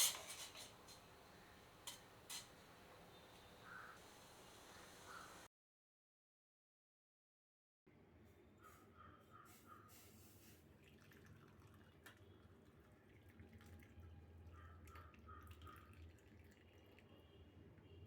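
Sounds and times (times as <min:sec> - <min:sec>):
faint room hum: 0:00.0 - 0:05.5.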